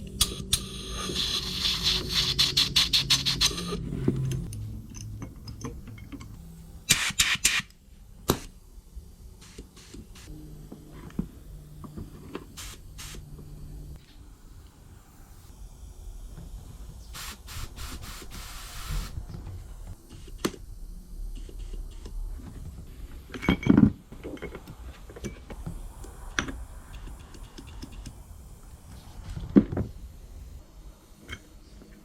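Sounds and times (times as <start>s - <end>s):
spray hiss: 0.5s - 3.8s, 9.2s - 10.3s, 12.5s - 13.4s, 14.4s - 19.3s
knocks and clinks of parts: 4.1s - 6.4s, 23.2s - 25.6s.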